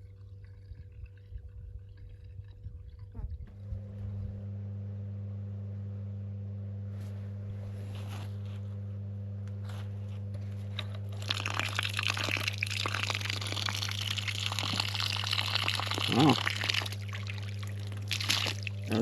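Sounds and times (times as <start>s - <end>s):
water sputtering from spigot: 0.0s - 3.4s, 11.1s - 19.0s
well pump low drone: 0.0s - 19.0s.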